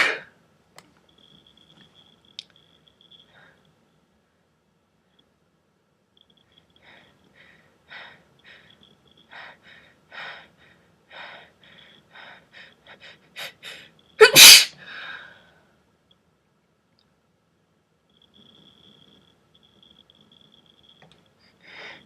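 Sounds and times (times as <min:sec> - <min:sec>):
person sneezing: 0:00.0 - 0:00.3, 0:14.2 - 0:14.8.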